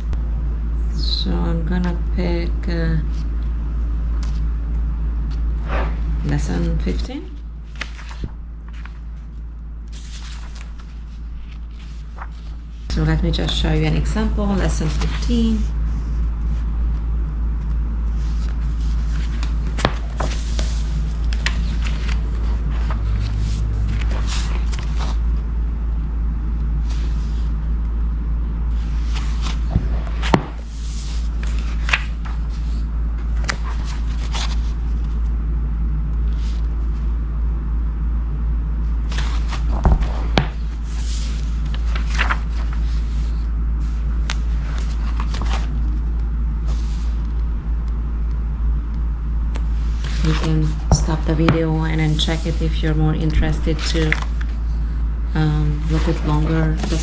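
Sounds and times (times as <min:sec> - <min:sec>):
steady low hum: 0:00.0 - 0:57.0
book pages rustling: 0:04.1 - 0:04.5, 0:05.3 - 0:17.0, 0:17.6 - 0:25.4, 0:26.8 - 0:27.6, 0:28.7 - 0:35.4, 0:36.2 - 0:37.0, 0:39.0 - 0:47.5, 0:49.6 - 0:54.8, 0:55.5 - 0:57.0
page flicks: 0:31.4 - 0:32.4, 0:41.6 - 0:42.7.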